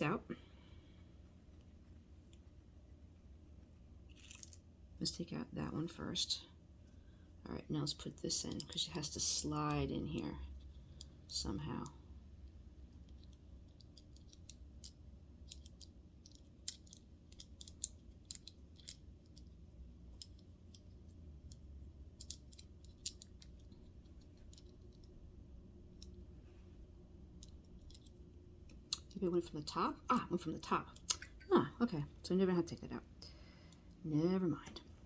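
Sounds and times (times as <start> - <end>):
faint low hum: 0.0 - 35.0
small metal parts clicking: 4.1 - 4.6, 13.0 - 25.2, 27.4 - 29.2.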